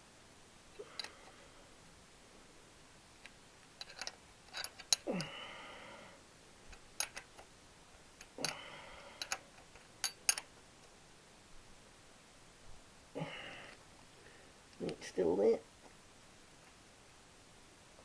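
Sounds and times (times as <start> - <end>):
metallic clicks of hand tools: 3.8 - 5.0, 6.7 - 7.4, 9.2 - 10.5.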